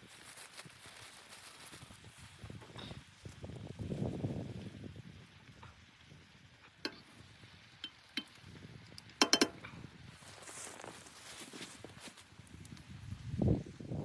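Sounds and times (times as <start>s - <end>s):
soft rustling and shuffling: 0.0s - 3.5s, 10.2s - 12.3s
hard objects clinking: 9.2s - 9.6s.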